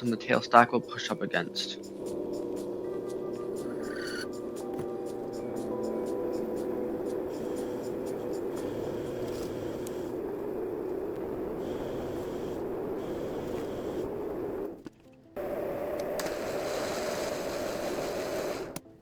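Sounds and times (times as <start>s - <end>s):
lathe tool scraping metal: 0.0s - 14.7s
lathe motor running: 0.0s - 14.8s, 15.4s - 18.8s.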